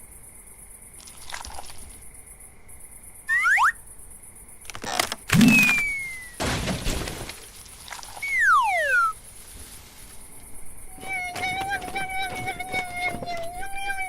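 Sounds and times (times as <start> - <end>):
breaking crash with deep thud: 5.3 - 7.6
tone gliding downward: 8.3 - 9.2.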